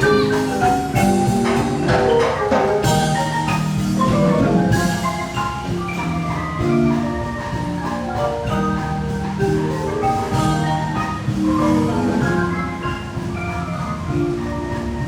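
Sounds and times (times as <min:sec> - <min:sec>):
marimba playing lively piece: 0:00.0 - 0:15.0.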